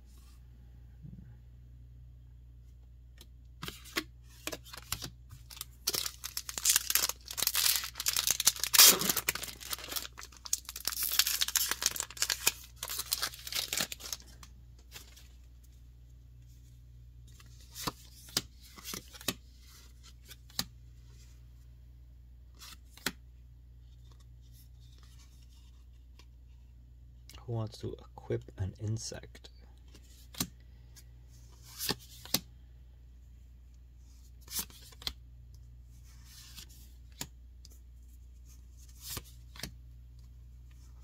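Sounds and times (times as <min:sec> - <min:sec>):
foil wrapper tearing and crinkling: 0:05.4 - 0:14.3.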